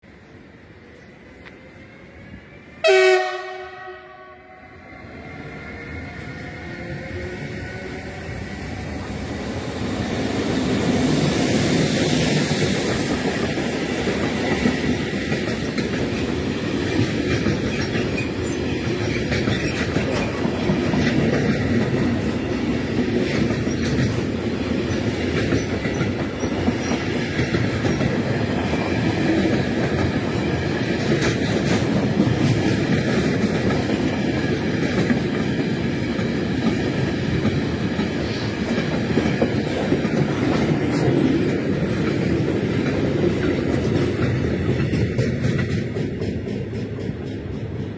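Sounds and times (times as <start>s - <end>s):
freight train wagons rumbling past: 1.0s - 47.9s
wheels clacking over rail joints: 12.9s - 47.9s.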